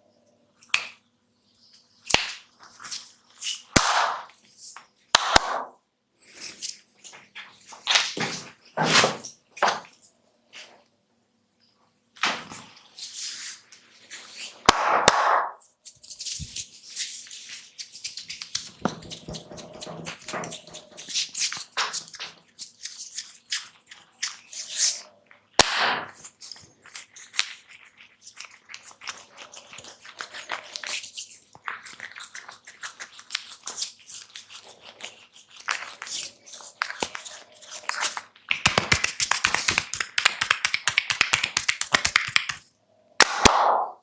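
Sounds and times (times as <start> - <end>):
fingers rubbing hair crackling: 16.9 - 25.2, 26.8 - 38.3.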